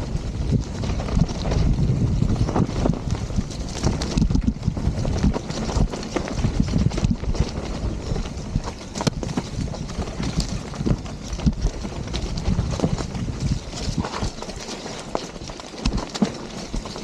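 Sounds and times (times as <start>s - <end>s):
bike knocking and rattling: 0.0s - 17.0s
wind buffeting microphone: 0.0s - 17.0s.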